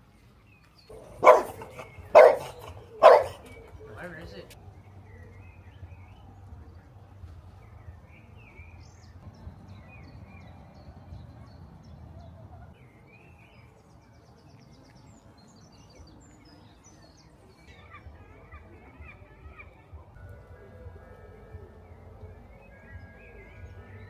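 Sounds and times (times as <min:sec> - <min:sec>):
small birds chirping: 0:00.0 - 0:20.0
bird trill: 0:00.9 - 0:03.9.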